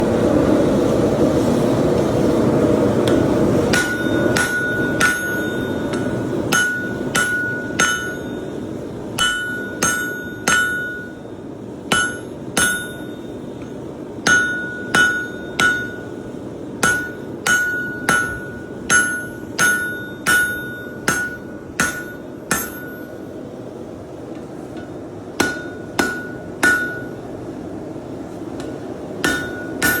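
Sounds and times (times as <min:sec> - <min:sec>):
forge burner roaring: 0:00.0 - 0:30.0
hammer striking anvil: 0:03.1 - 0:08.6, 0:09.2 - 0:11.2, 0:11.9 - 0:16.1, 0:16.8 - 0:23.2, 0:24.8 - 0:27.2, 0:28.6 - 0:30.0.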